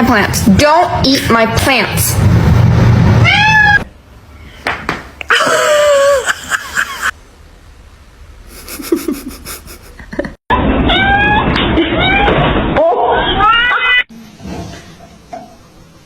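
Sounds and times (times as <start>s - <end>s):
cat meowing: 3.2s - 3.9s, 10.9s - 12.4s.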